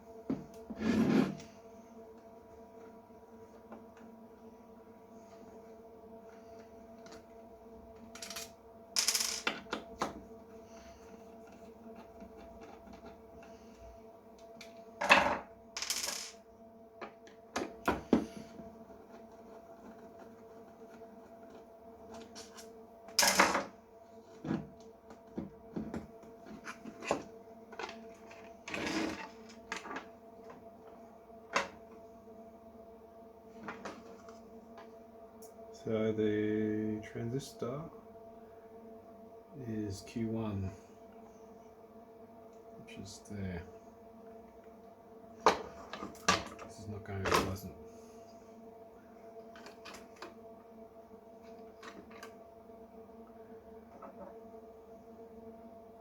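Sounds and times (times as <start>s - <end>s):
small metal parts clattering: 8.2s - 9.6s, 15.8s - 16.4s.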